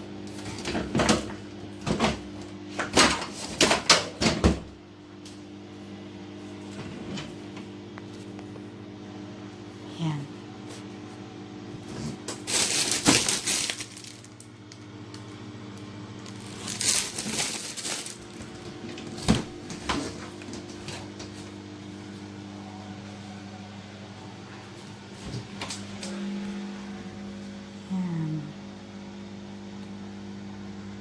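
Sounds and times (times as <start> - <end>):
steady low hum: 4.9 - 31.0
plastic packaging crinkling: 12.3 - 19.2.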